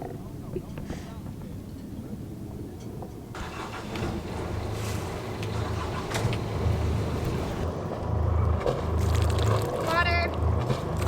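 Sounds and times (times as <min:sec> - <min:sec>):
boat diesel engine running: 0:03.4 - 0:07.7.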